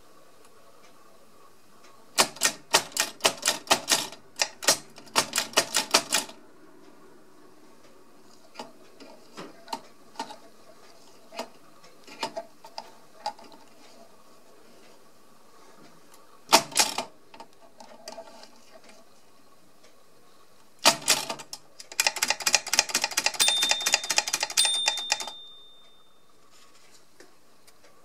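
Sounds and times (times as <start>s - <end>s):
rapid clicking: 20.8s - 25.4s
sharp mechanical clacks: 20.8s - 25.9s
high ringing tone: 23.4s - 26.4s.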